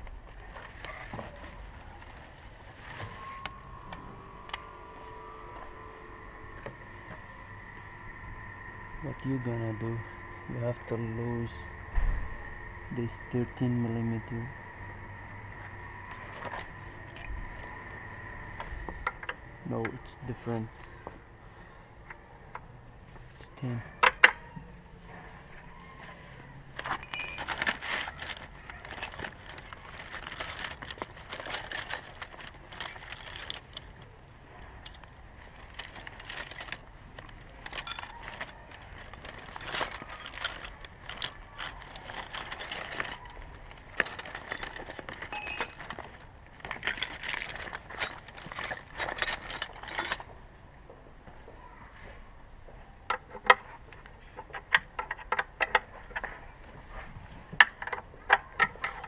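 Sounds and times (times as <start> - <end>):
metal hand tools clinking: 26.8 - 34.0, 34.8 - 50.3.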